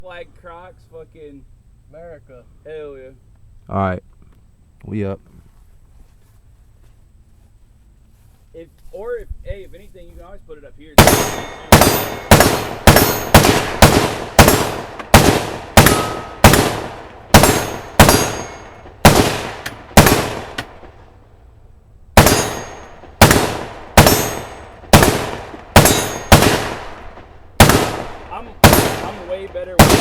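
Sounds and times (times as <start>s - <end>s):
single gunshots: 11.0s - 21.0s, 22.2s - 30.0s.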